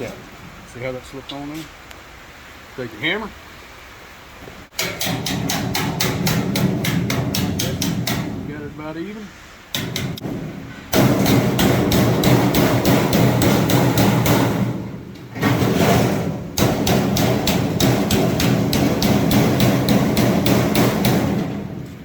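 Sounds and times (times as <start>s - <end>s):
hammer striking sheet metal: 4.7s - 8.6s, 9.7s - 21.9s.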